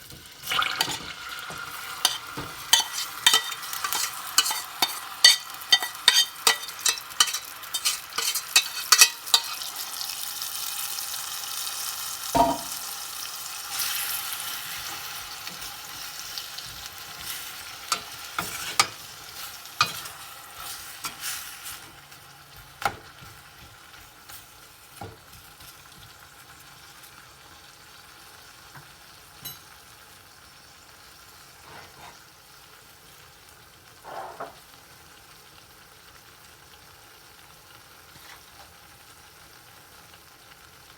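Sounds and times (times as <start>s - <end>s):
food sizzling in a pan: 0.0s - 40.9s
utensil stirring and scraping pan: 0.5s - 10.2s, 13.7s - 26.2s, 31.5s - 32.3s, 38.1s - 38.7s
utensil knocking on pan: 12.4s - 12.8s.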